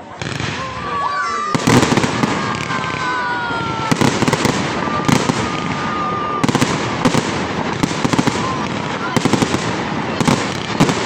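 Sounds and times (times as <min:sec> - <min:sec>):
fireworks bangs and crackles: 0:00.0 - 0:11.0
firework whistle: 0:01.5 - 0:09.2.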